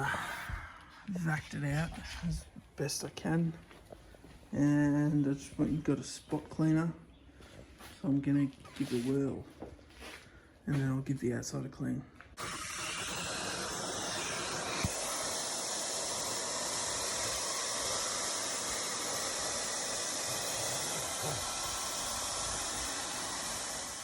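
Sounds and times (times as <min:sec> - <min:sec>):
spot cleaner motor and suction: 0:12.4 - 0:24.0.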